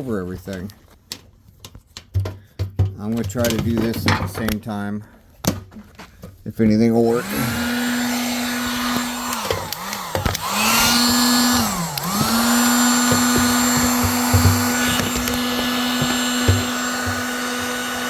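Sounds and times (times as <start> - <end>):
heat gun fan motor humming: 7.0 - 18.0.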